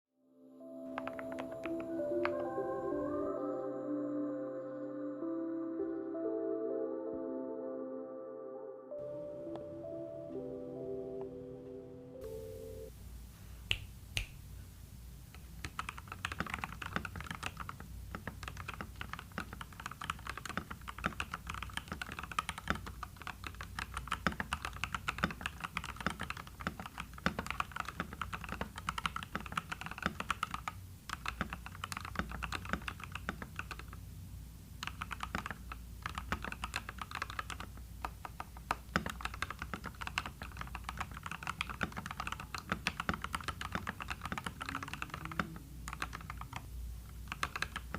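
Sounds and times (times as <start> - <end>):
mechanical keyboard typing: 0.9 - 2.4, 15.4 - 34.0, 34.8 - 47.9.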